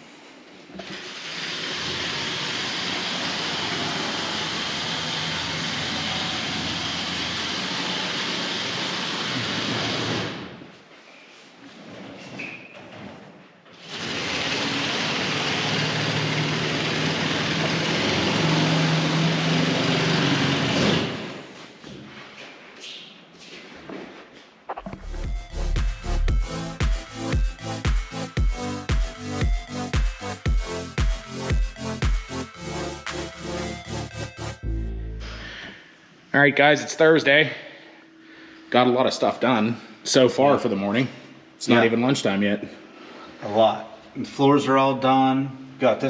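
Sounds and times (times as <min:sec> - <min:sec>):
power cutting tool running: 0:01.1 - 0:10.2, 0:13.9 - 0:21.0.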